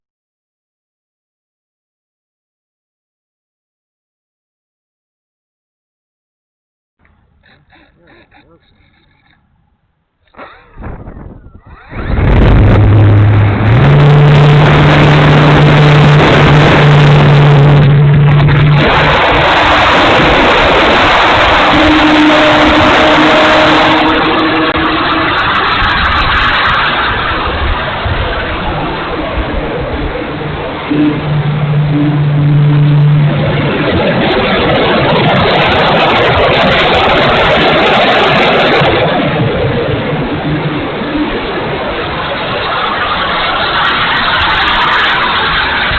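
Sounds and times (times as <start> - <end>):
rough rushing noise with crackles: 10.2 - 45.9
electric motor and propeller whining: 10.3 - 45.9.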